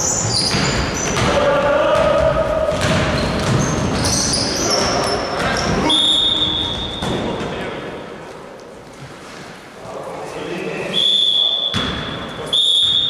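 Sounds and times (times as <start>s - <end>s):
sneakers squeaking on court: 0.0s - 1.4s, 2.0s - 7.4s, 11.7s - 13.0s
basketballs bouncing: 0.0s - 7.6s, 11.7s - 13.0s
whistle blowing: 5.9s - 7.0s, 10.9s - 13.0s.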